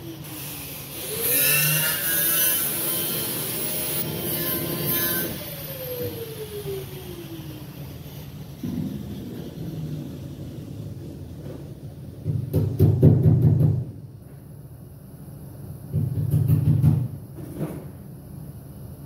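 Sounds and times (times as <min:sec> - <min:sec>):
arc welding buzzing crackle: 0:00.0 - 0:11.0.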